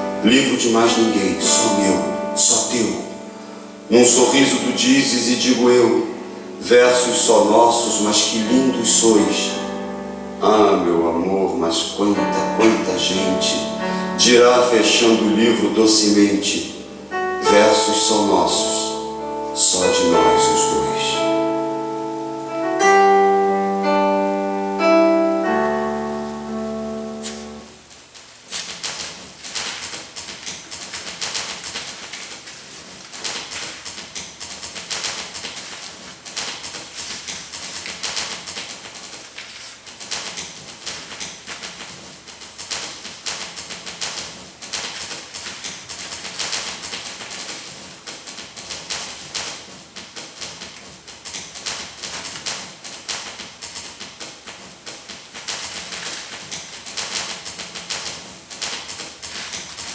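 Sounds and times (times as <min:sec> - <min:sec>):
paper rustling and crinkling: 0:28.1 - 0:43.2, 0:44.2 - 0:59.9.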